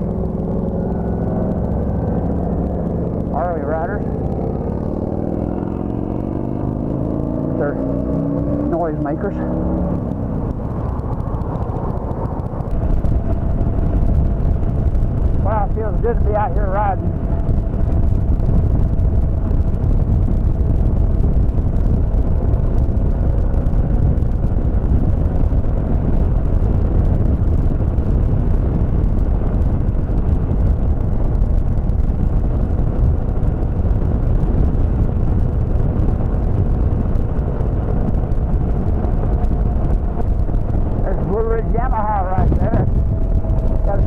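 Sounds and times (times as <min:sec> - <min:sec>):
wind rush on microphone: 0:00.0 - 0:44.0.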